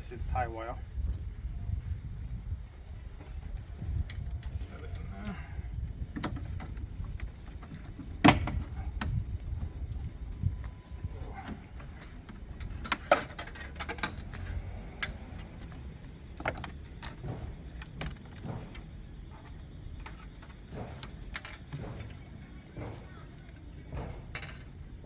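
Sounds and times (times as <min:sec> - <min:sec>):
low background rumble: 0:00.0 - 0:25.0
metallic clicks of wire handling: 0:12.6 - 0:17.2.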